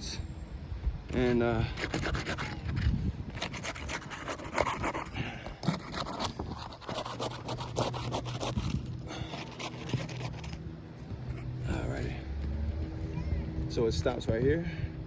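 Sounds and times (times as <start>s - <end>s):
tool scraping asphalt shingles: 1.1s - 12.1s.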